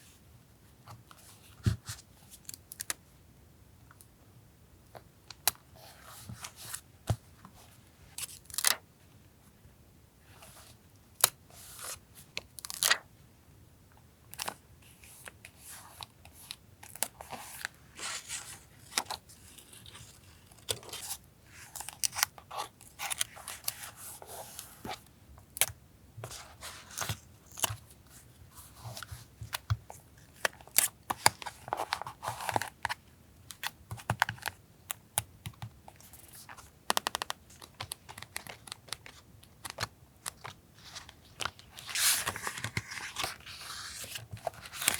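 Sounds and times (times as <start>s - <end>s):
paper rustling and crinkling: 36.5s - 44.9s.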